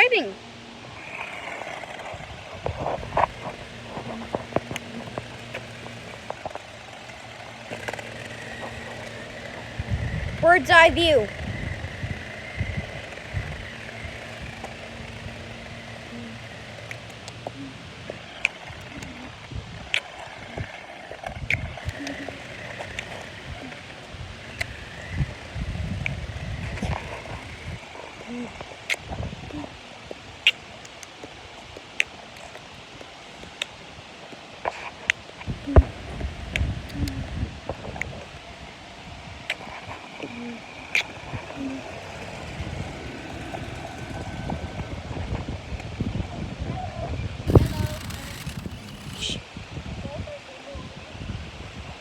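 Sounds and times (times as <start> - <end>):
uneven rumbling noise: 0.0 - 28.6, 35.5 - 46.5, 47.4 - 49.6
toy car motor hum: 0.0 - 49.6
clicks and crackles: 1.1 - 10.4, 47.5 - 49.4.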